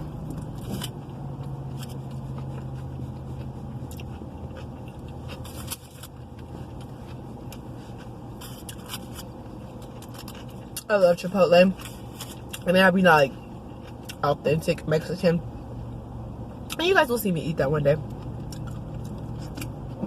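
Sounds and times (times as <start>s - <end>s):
biting and chewing food: 0.0s - 10.9s, 11.7s - 12.7s, 18.0s - 20.0s
low car interior hum: 0.0s - 20.0s.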